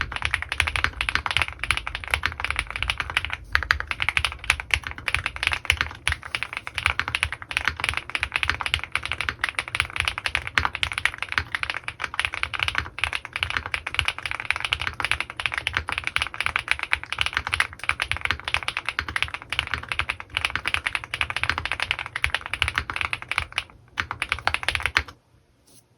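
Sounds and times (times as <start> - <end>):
mechanical keyboard typing: 0.0 - 25.2.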